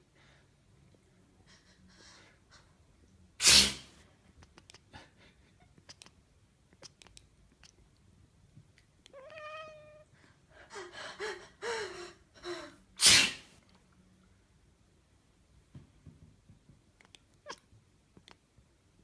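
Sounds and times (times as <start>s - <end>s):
person sneezing loudly: 3.4s - 3.9s, 13.0s - 13.5s
cat meowing: 9.1s - 10.1s, 17.4s - 17.7s.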